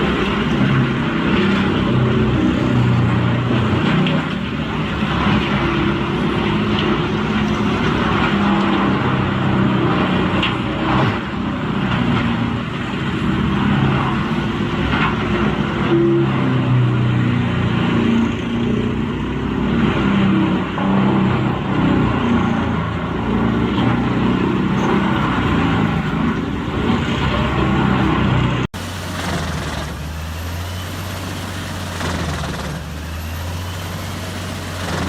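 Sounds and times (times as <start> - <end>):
heavy machine engine under load: 0.0 - 35.0.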